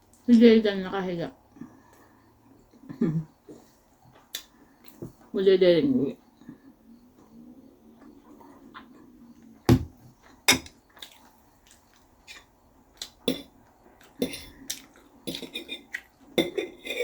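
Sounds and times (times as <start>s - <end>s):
cutlery and dishes clinking: 10.5s - 10.8s.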